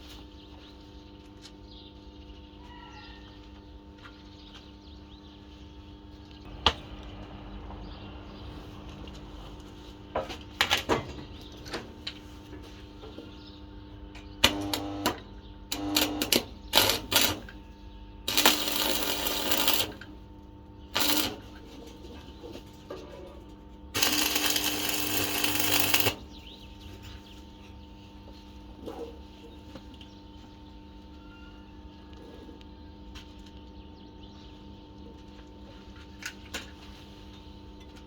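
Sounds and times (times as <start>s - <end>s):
steady low hum: 13.7s - 21.6s
bursts of harsh noise: 18.3s - 20.0s, 24.0s - 26.2s.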